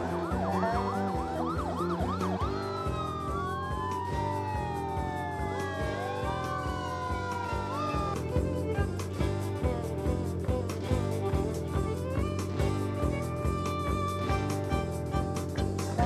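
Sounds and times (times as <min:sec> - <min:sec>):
emergency vehicle sirens: 0:00.0 - 0:08.4
background music with steady beat: 0:00.0 - 0:16.0.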